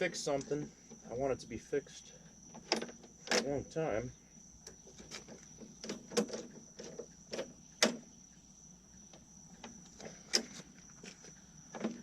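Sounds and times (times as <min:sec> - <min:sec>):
high insect trill: 0:00.0 - 0:12.0
sharp metallic clicks and knocks: 0:02.5 - 0:03.6, 0:04.6 - 0:08.1.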